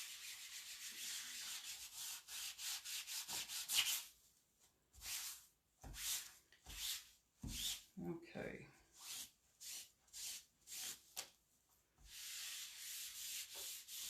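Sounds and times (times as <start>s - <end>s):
cloth wiping a screen: 12.0s - 14.0s.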